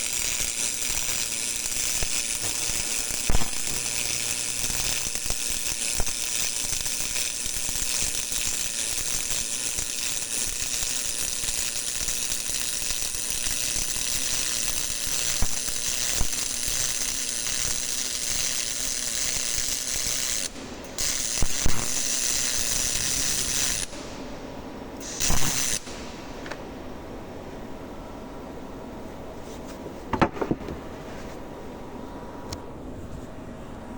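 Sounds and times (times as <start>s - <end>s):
welding arc crackling: 0.0s - 24.1s, 25.0s - 26.6s.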